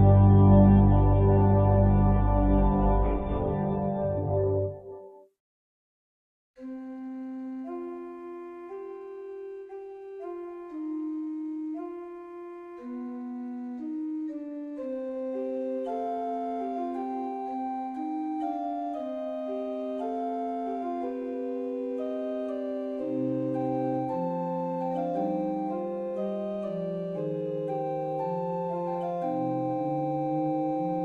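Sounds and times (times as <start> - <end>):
low bass part: 0.0 - 4.9
held organ chords: 0.0 - 5.1, 6.6 - 31.0.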